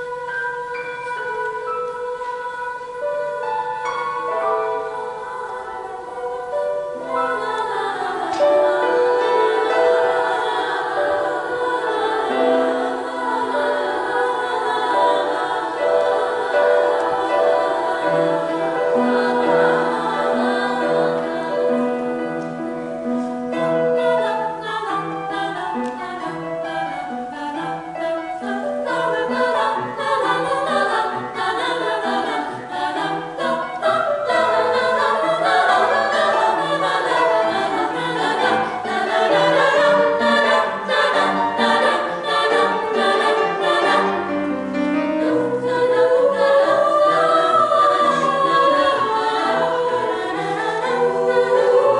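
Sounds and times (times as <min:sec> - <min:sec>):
choir singing: 0:00.0 - 0:51.9.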